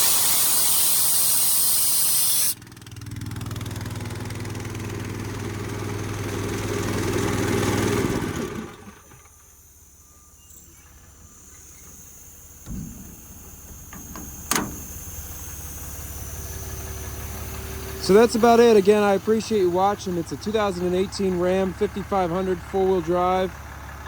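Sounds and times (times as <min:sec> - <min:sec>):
engine running: 0:00.0 - 0:24.0
dull thump: 0:11.8 - 0:15.6
sharp click: 0:12.6 - 0:15.1.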